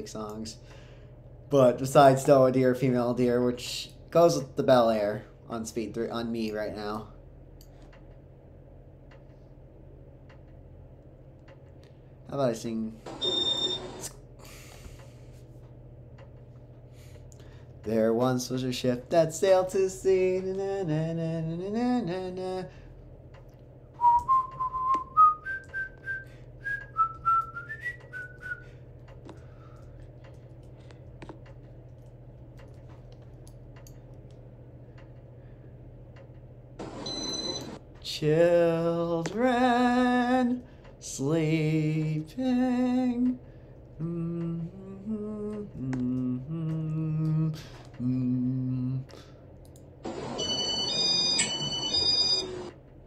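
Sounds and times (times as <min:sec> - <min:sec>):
ceiling fan motor hum: 0:00.0 - 0:53.0
man singing wordless tune: 0:17.9 - 0:22.8, 0:38.0 - 0:43.4, 0:44.0 - 0:49.1
person whistling a tune: 0:24.0 - 0:28.7.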